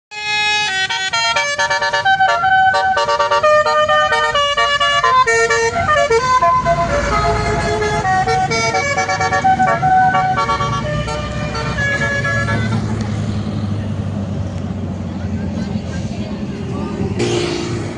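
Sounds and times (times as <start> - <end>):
musical horn playing a melody: 0.1 - 12.9.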